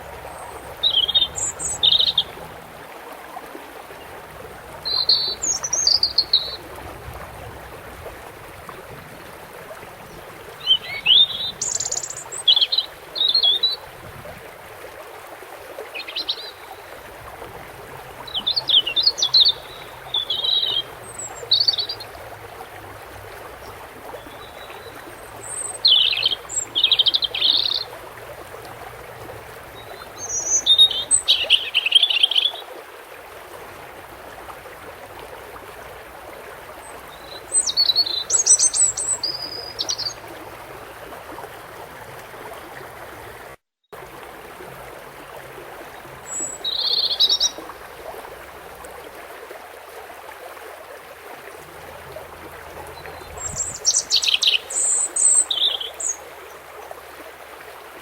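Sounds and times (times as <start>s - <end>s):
running water: 0.0s - 58.0s
bird twittering song: 0.3s - 2.4s, 4.8s - 6.7s, 10.1s - 13.8s, 18.3s - 22.2s, 23.6s - 28.0s, 29.8s - 32.6s, 36.8s - 40.4s, 46.2s - 47.7s, 52.8s - 56.3s.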